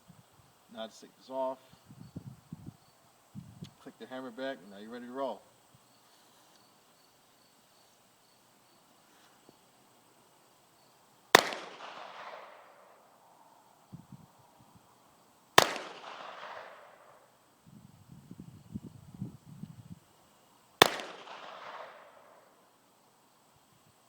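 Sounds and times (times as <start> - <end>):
pistol shots with echo: 11.4 - 13.0, 15.6 - 17.2, 20.8 - 22.4.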